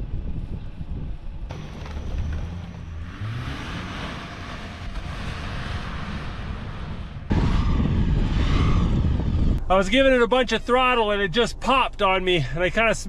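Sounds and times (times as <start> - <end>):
vehicle engine revving: 1.5 - 9.6.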